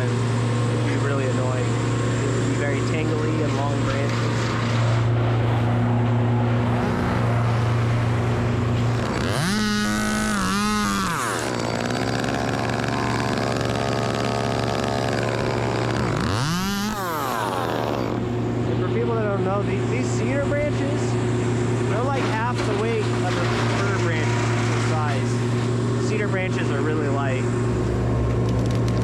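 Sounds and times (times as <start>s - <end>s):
chainsaw revving: 0.0s - 5.2s, 6.6s - 18.6s
low engine hum: 0.0s - 29.0s.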